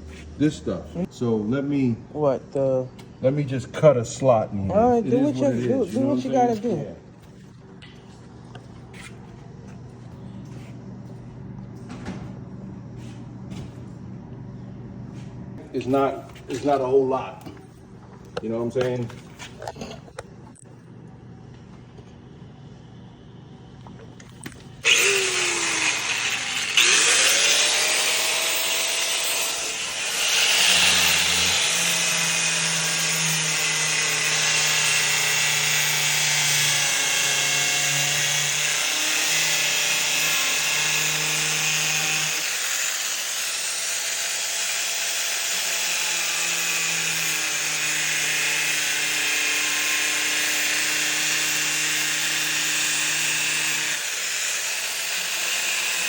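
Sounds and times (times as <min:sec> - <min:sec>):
power tool cutting plastic: 0:24.8 - 0:56.0.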